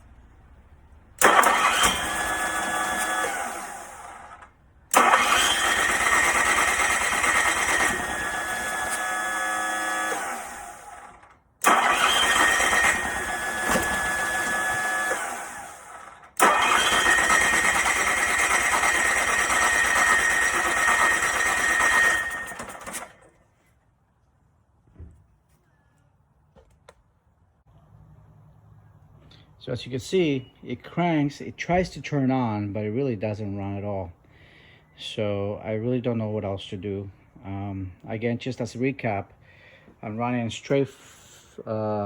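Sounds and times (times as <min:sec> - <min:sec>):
generator engine cranking: 0:01.1 - 0:23.4.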